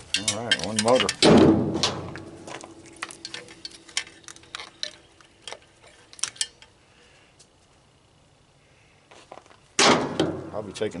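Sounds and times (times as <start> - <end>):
clicks and clinks of small parts: 0.0 - 1.2, 2.2 - 6.8.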